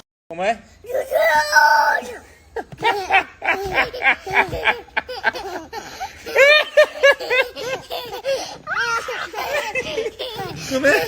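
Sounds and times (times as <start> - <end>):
small child giggling: 2.0 - 11.0.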